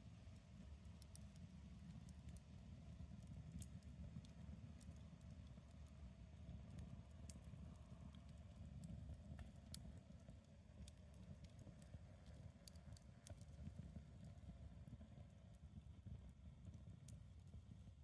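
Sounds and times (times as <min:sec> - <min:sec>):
campfire crackling and popping: 0:10.8 - 0:13.5.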